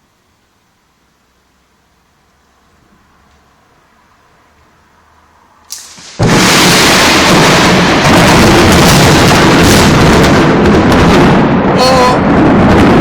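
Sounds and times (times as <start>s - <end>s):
thunder crack: 5.7s - 13.0s
loud thunder rumble: 5.8s - 13.0s.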